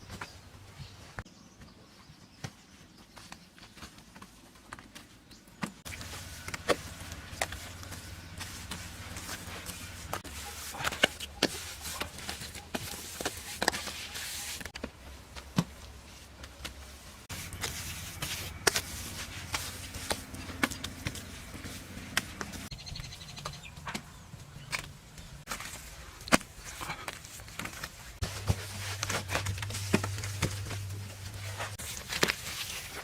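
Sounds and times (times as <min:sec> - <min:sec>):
low steady hum: 0:28.2 - 0:33.0.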